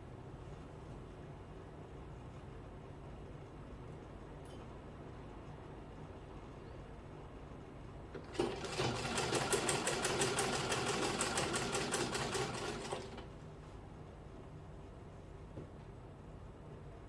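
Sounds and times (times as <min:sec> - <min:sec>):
sewing machine stitching: 0:08.2 - 0:13.3.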